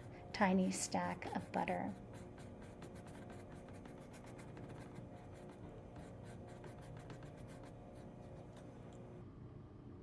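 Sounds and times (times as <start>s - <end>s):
paintbrush scratching on canvas: 0.6s - 8.5s.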